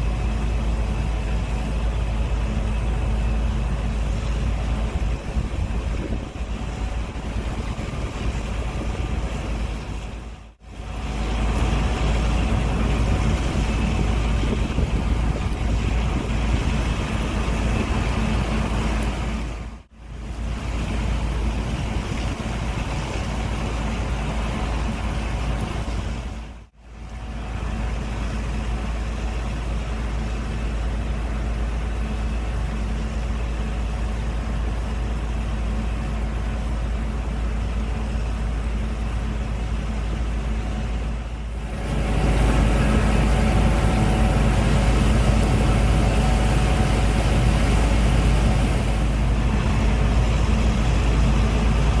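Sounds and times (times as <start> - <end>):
combine harvester droning: 0.0 - 52.0.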